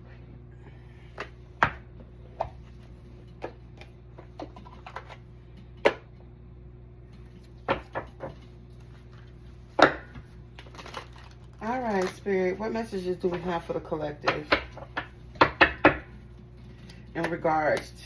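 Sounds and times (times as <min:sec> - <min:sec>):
low steady hum: 0:00.0 - 0:18.0
cards and objects knocking on table: 0:07.6 - 0:08.4.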